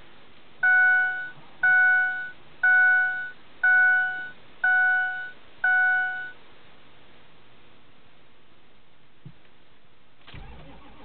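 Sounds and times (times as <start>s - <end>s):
dashboard warning chime: 0.6s - 6.4s.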